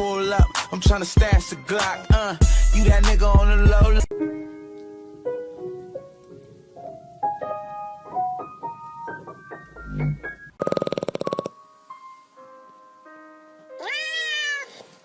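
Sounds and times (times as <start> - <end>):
piano melody: 4.0 - 15.0.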